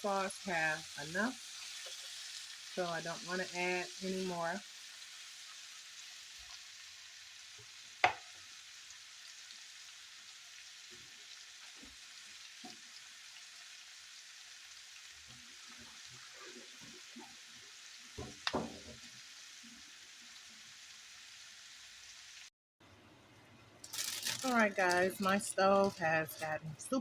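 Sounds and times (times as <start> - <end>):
vegetables sizzling in a pan: 0.0 - 22.5, 23.8 - 27.0
knocks against a pan: 8.0 - 8.3, 18.2 - 18.9.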